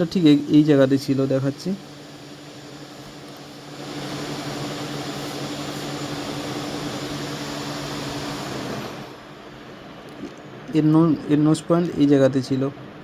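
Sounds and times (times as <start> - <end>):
rushing hiss of blowing air: 0.0 - 9.3
low electrical hum: 0.0 - 13.0.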